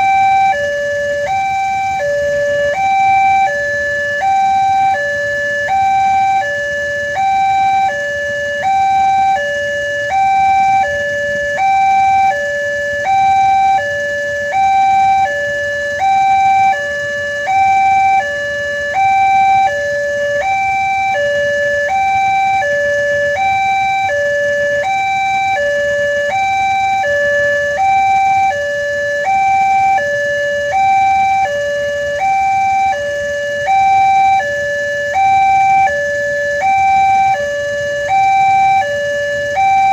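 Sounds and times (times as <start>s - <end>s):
level crossing alarm two-tone: 0.0s - 39.9s.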